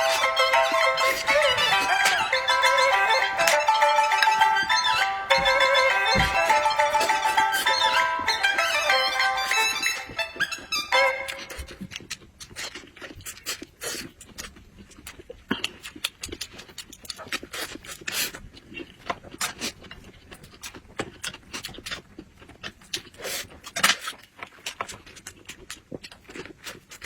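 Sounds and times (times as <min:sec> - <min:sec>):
chewing and mouth smacking: 0:11.3 - 0:27.0.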